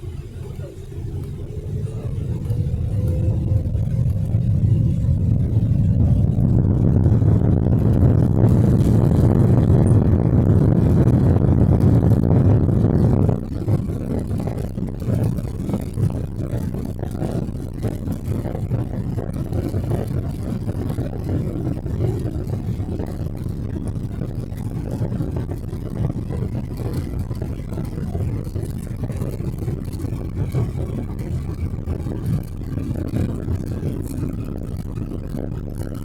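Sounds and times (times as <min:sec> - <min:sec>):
jet engines rumbling in cabin: 0:00.0 - 0:36.0.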